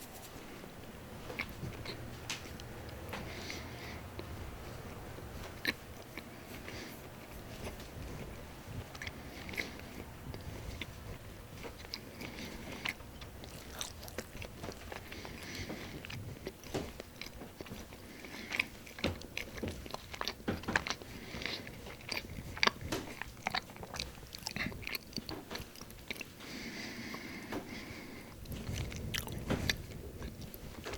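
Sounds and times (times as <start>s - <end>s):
person chewing crunchy bread: 1.2s - 30.9s.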